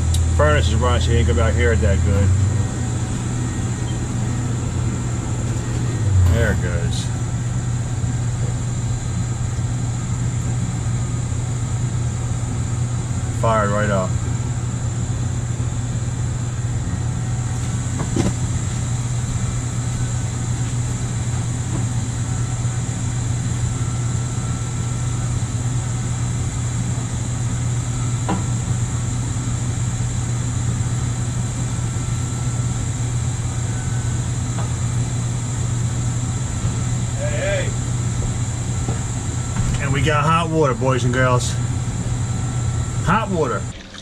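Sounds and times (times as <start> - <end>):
furnace running: 0.0 - 44.0
water heater burner and fan hum: 0.0 - 44.0.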